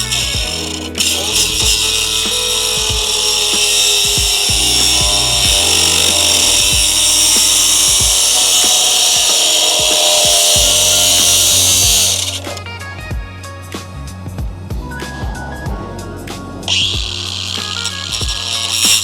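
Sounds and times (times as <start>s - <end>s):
angle grinder cutting steel: 0.0s - 12.8s, 16.7s - 19.0s
background music with beat: 0.0s - 19.0s.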